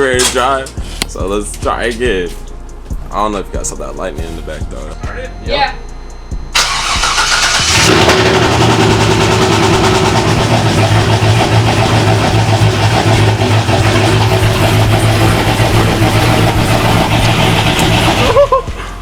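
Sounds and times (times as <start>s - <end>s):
loud choppy engine idling: 6.6s - 19.0s.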